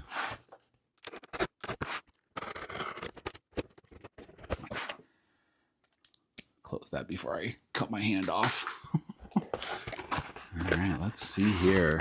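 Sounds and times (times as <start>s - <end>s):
knife cutting open package: 1.0s - 4.8s, 9.7s - 12.0s.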